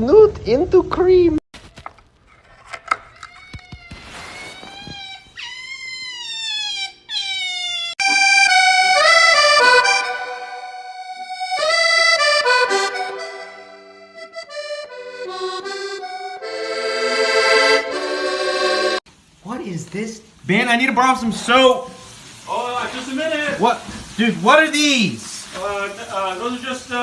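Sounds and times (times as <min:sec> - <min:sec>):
accordion music: 0:08.0 - 0:19.0.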